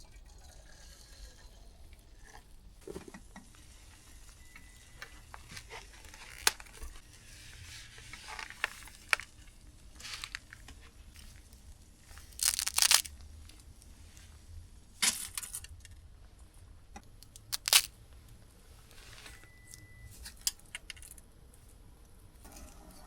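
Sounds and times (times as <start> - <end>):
packaging crinkling and tearing: 5.1 - 7.0, 7.8 - 13.7, 17.2 - 17.9.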